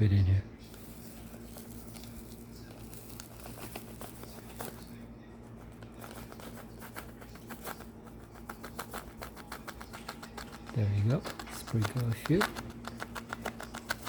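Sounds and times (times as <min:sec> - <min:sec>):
steady low hum: 0:00.0 - 0:14.0
salt container clicking and crinkling: 0:06.0 - 0:14.0.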